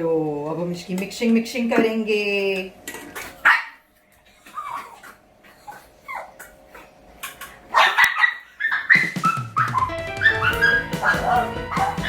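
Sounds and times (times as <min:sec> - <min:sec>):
dog whining and yipping: 0:04.4 - 0:06.9, 0:07.8 - 0:12.0.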